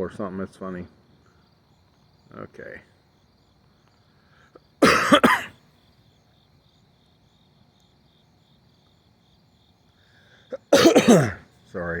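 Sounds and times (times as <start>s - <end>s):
crickets chirping: 0.0s - 12.0s
person coughing: 4.8s - 5.5s, 10.5s - 11.4s.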